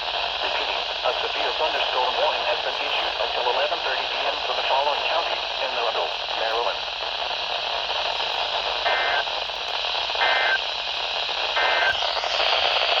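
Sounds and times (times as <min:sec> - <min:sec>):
radio receiver hiss: 0:00.0 - 0:13.0
digital data tone bursts: 0:10.2 - 0:10.6, 0:11.6 - 0:12.1.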